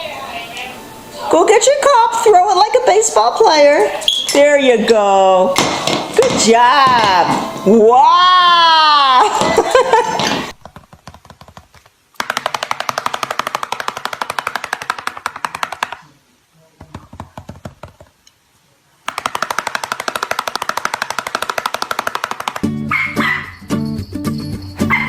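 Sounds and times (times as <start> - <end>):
rapid rattle of sharp clicks: 19.1 - 22.6.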